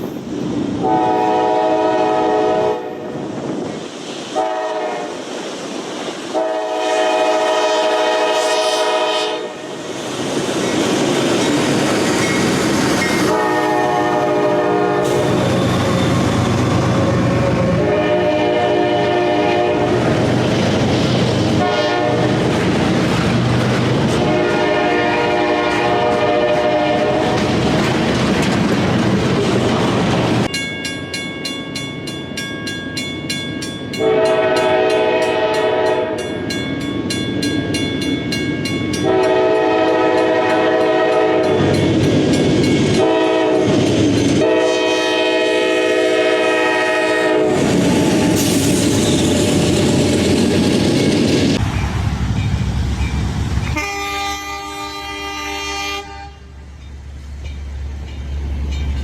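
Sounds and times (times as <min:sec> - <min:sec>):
passing train rumble and clatter: 0:00.0 - 0:59.0
locomotive air horn blasts: 0:00.8 - 0:03.1, 0:04.4 - 0:05.1, 0:06.3 - 0:09.7, 0:13.3 - 0:15.6, 0:17.4 - 0:20.1, 0:21.6 - 0:22.4, 0:24.2 - 0:27.5, 0:34.0 - 0:36.2, 0:39.0 - 0:41.6, 0:43.0 - 0:43.8, 0:44.4 - 0:47.6, 0:53.7 - 0:56.5.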